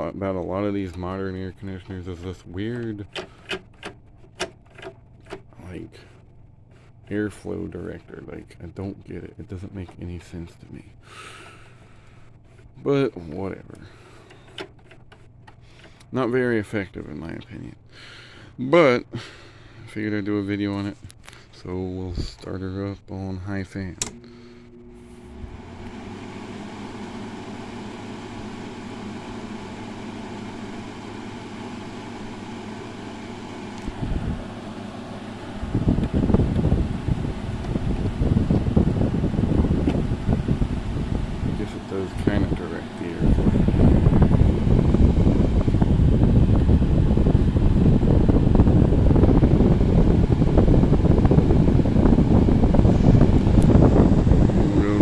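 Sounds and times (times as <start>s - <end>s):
air conditioner motor hum: 0.0s - 55.0s
switch click: 24.0s - 24.3s.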